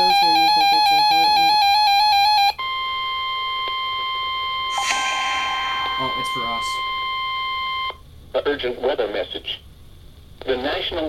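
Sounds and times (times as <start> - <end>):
electronic alert tone: 4.7 - 7.5
steady warning alarm tone: 4.7 - 7.9.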